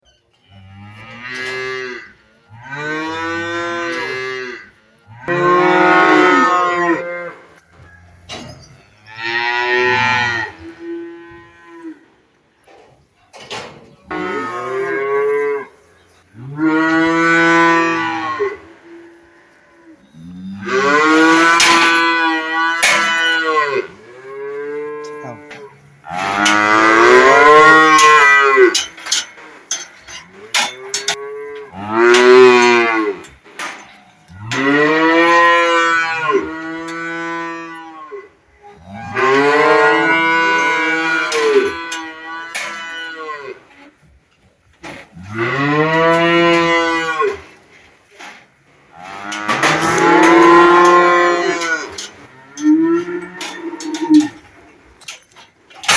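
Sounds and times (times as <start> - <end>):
cow mooing: 0.6 - 7.4, 20.3 - 28.9, 30.5 - 33.3, 49.0 - 54.4.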